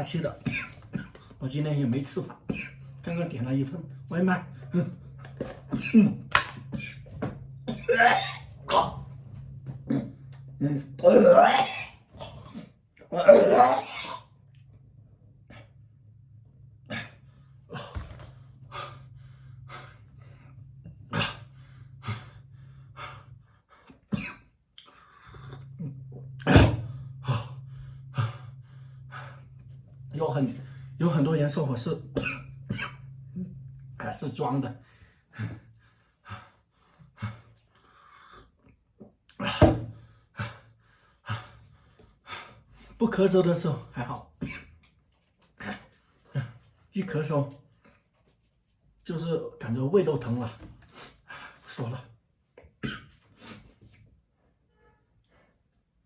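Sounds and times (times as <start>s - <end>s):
steady low hum: 0.0s - 54.5s
man coughing: 0.2s - 1.3s, 2.1s - 3.2s, 4.4s - 7.0s, 9.9s - 12.0s, 24.1s - 24.5s, 25.8s - 26.9s, 31.9s - 33.5s
man breathing heavily: 16.8s - 24.1s, 24.8s - 31.2s, 34.8s - 38.7s, 39.3s - 43.0s.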